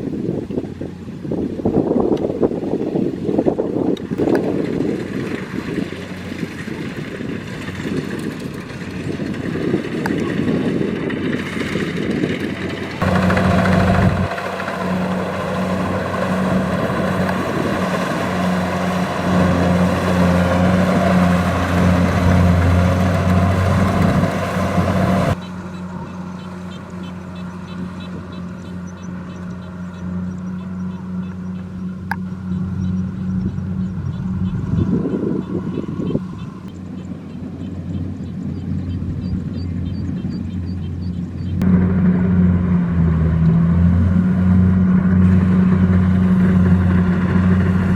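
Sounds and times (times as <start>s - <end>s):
wind rumbling on microphone: 0.0s - 25.4s, 30.2s - 47.9s
diesel engine running: 0.0s - 47.9s.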